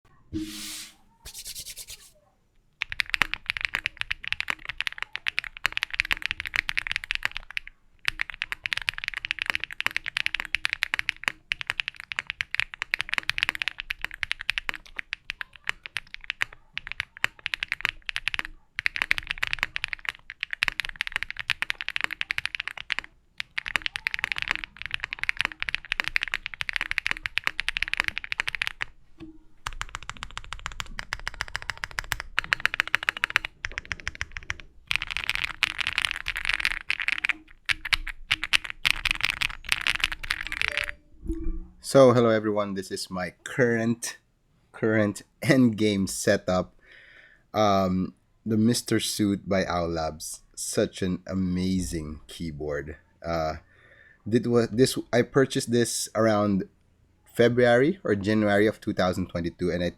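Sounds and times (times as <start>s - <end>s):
mechanical keyboard typing: 2.8s - 28.9s, 29.6s - 41.0s.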